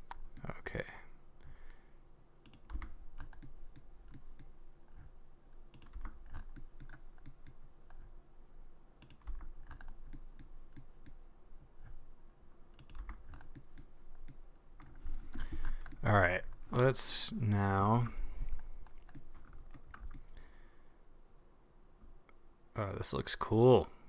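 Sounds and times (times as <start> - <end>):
keyboard and mouse clicking: 0.0 - 0.5, 2.4 - 8.1, 9.0 - 11.2, 12.7 - 16.0, 18.8 - 20.4.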